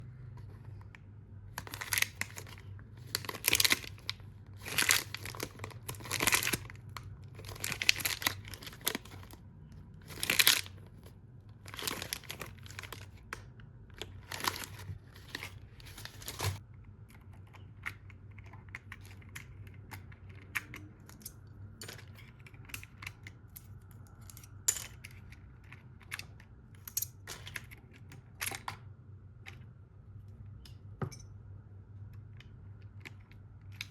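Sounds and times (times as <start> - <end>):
packaging tearing and crinkling: 1.6 - 9.4, 10.0 - 13.2, 14.1 - 16.6.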